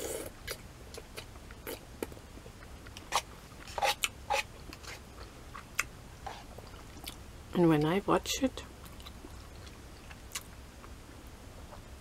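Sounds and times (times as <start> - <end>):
chewing noodles with wet smacks: 8.8 - 10.5.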